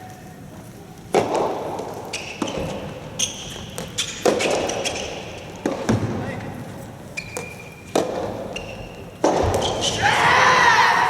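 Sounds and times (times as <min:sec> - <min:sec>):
ball bouncing on court: 0:01.1 - 0:06.3, 0:07.2 - 0:10.0
tennis ball hit by rackets: 0:04.2 - 0:04.8, 0:07.3 - 0:08.4, 0:09.2 - 0:09.8.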